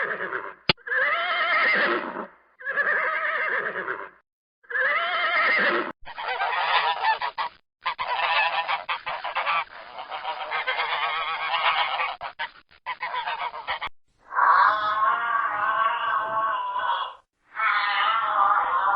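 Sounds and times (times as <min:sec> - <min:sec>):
geese honking: 0:06.1 - 0:13.9.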